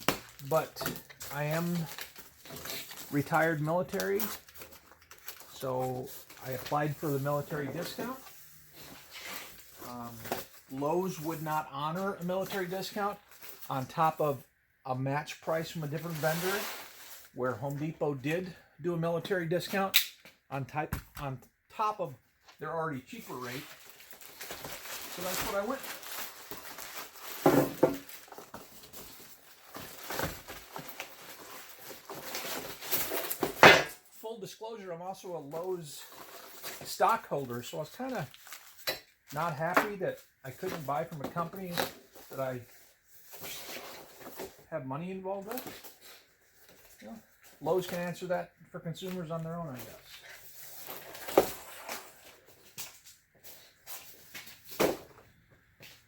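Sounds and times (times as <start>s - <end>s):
packaging rustling and knocking: 23.8s - 31.4s.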